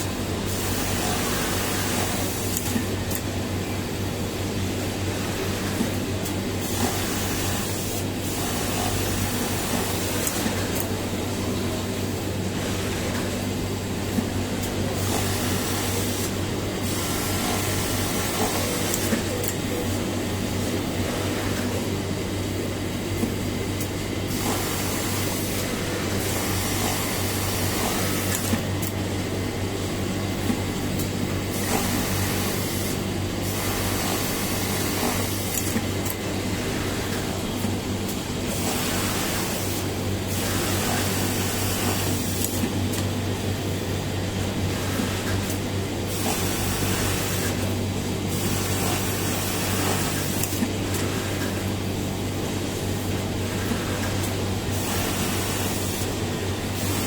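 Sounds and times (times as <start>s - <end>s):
sewing machine humming: 24.1s - 29.4s, 30.4s - 43.4s.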